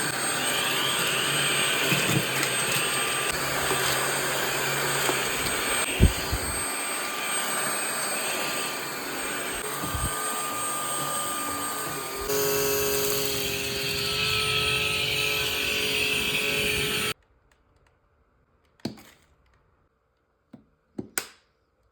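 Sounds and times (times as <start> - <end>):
cordless vacuum running: 0.0 - 17.2.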